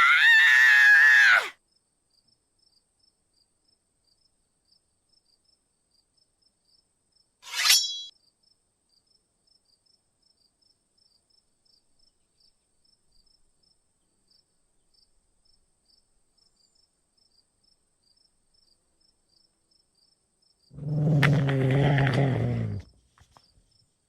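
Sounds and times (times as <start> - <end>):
crickets chirping: 0.0 - 7.3, 8.2 - 21.5
high insect hum: 8.2 - 24.0.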